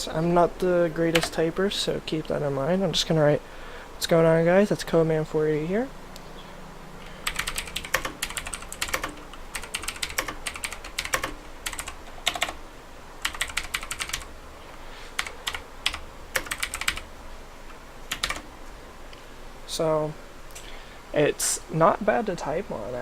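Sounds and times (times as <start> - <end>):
mechanical keyboard keys clacking: 1.1 - 1.4, 7.2 - 12.6, 13.2 - 14.3, 15.2 - 17.0, 18.1 - 18.4.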